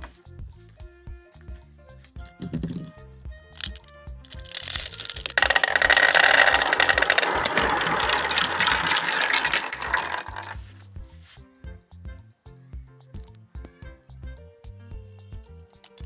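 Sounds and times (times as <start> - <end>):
background music: 0.0 - 6.8, 7.4 - 16.0
marbles rattling down a marble run: 2.4 - 2.9, 3.5 - 10.7, 15.8 - 16.0.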